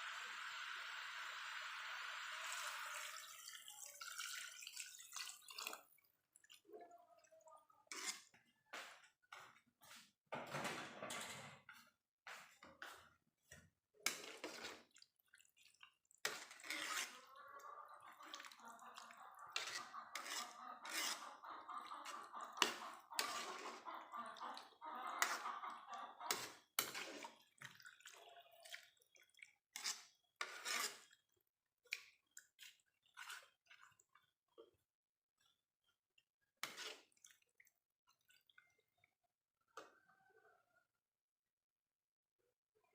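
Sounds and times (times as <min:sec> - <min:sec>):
liquid sloshing and dripping: 0:02.9 - 0:08.4, 0:13.5 - 0:34.8, 0:35.4 - 0:40.0.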